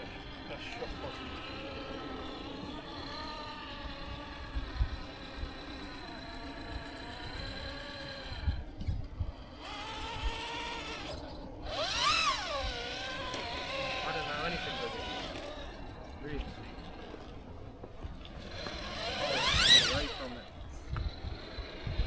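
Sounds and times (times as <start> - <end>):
electric motor whining: 0.0 - 22.0.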